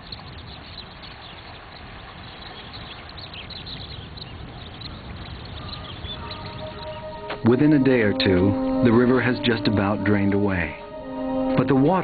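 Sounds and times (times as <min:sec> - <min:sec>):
faint bird chirps: 0:00.0 - 0:07.3
floodwater rushing: 0:00.0 - 0:12.0.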